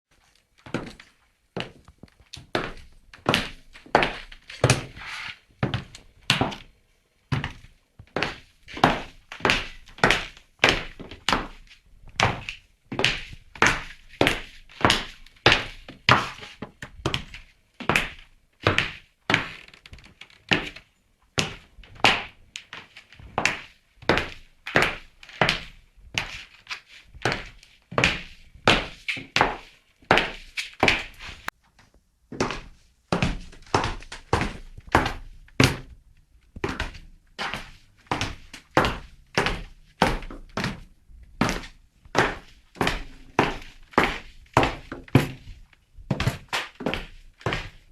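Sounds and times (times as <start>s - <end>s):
high heels on hard floor: 27.2s - 31.5s, 36.6s - 47.9s.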